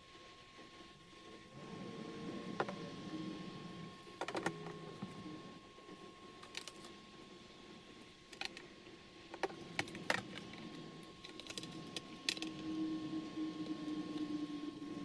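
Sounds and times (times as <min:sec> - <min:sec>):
low hum: 0:01.0 - 0:15.0
small parts clicking and tapping: 0:06.4 - 0:07.0, 0:08.3 - 0:08.7, 0:09.3 - 0:12.8.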